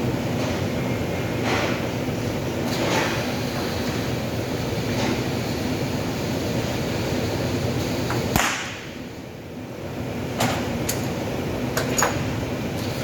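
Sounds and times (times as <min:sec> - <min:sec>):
rumbling workshop hum: 0:00.0 - 0:13.0.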